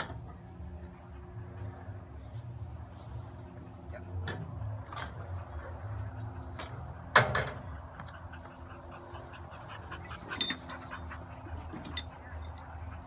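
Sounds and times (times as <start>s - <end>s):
steel parts knocking: 10.4s - 11.1s, 11.8s - 12.6s
metallic clank with ring: 10.4s - 11.2s, 11.8s - 12.2s.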